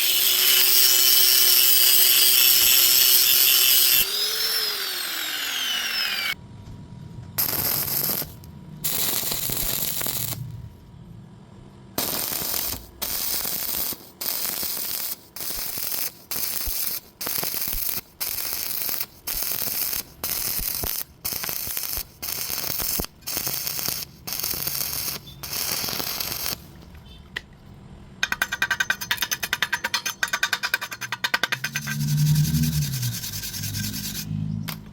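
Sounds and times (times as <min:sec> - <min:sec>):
arc welding crackling: 0:00.0 - 0:06.4, 0:07.4 - 0:10.6, 0:12.0 - 0:26.9.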